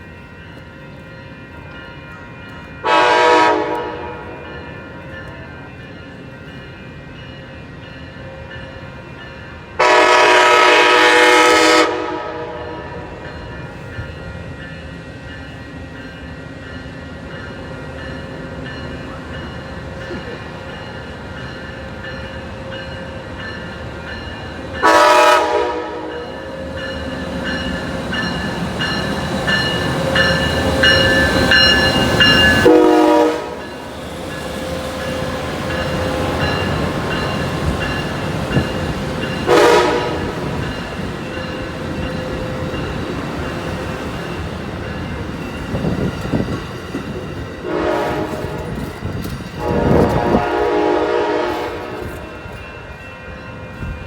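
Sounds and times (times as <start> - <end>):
train running noise: 0.0 - 54.0
locomotive air horn blasts: 2.8 - 4.3, 9.8 - 13.1, 24.8 - 26.3, 32.6 - 33.6, 39.5 - 40.4, 47.6 - 48.8, 49.6 - 52.3.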